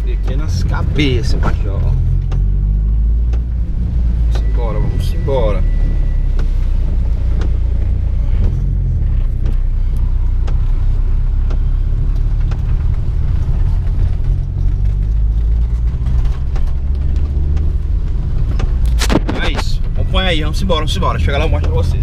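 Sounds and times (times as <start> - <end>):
car engine and road noise: 0.0 - 22.0
faint clicks: 11.4 - 19.6.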